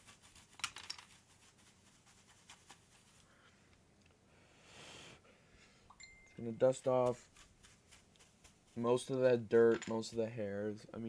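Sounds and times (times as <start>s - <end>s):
duster brushing over keyboard: 6.6s - 10.9s.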